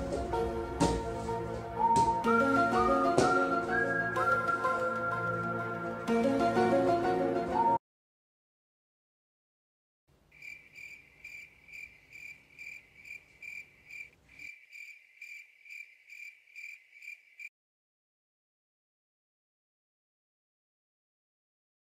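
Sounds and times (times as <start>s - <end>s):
crickets chirping: 10.3s - 17.5s.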